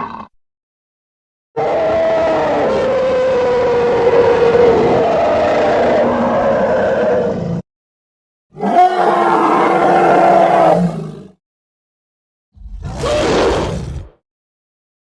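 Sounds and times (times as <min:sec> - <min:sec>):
deep growling roar: 0:01.6 - 0:07.6, 0:12.6 - 0:14.2.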